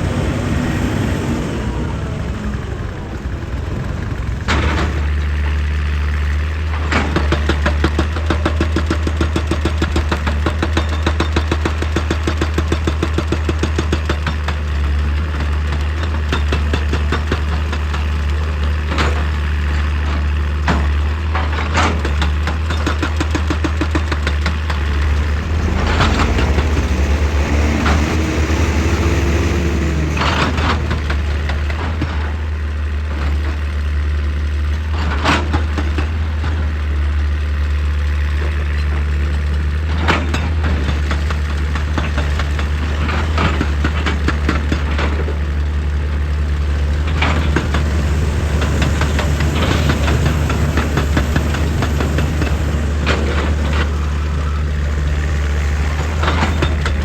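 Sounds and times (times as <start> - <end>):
excavator diesel engine running: 0.0 - 57.0
machine whine: 46.6 - 57.0.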